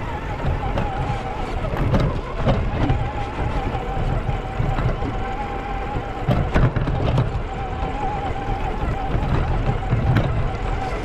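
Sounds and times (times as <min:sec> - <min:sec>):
electric motor and gear whine: 0:00.0 - 0:11.0
low rumble over rough trail: 0:00.0 - 0:11.0.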